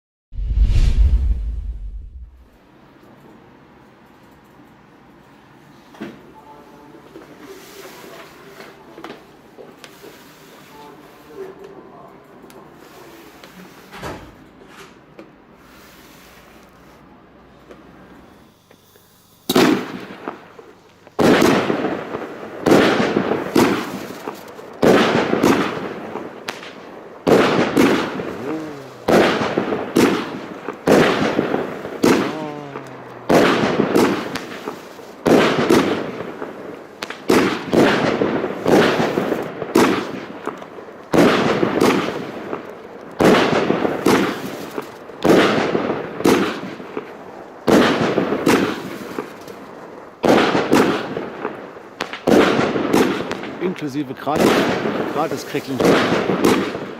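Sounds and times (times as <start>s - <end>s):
firework battery bangs: 17.7s - 56.9s.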